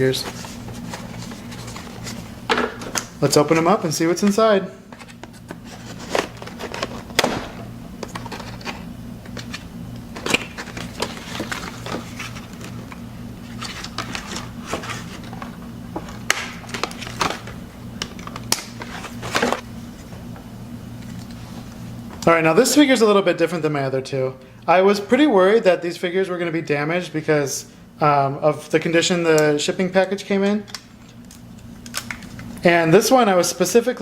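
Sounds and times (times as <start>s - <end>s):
steady low hum: 0.0s - 34.0s
packaging crinkling and snapping: 5.0s - 19.6s, 30.7s - 32.6s.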